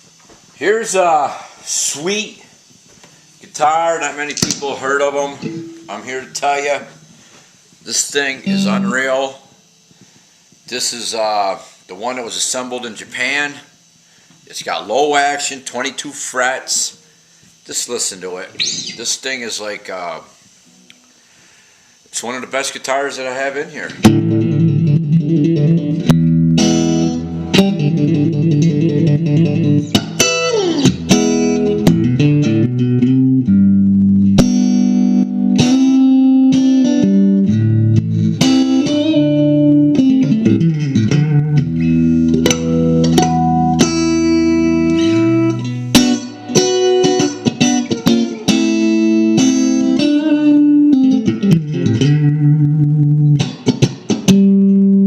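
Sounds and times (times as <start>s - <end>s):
electric guitar playing: 4.0s - 7.4s, 8.1s - 9.3s, 18.6s - 19.1s, 23.9s - 55.0s.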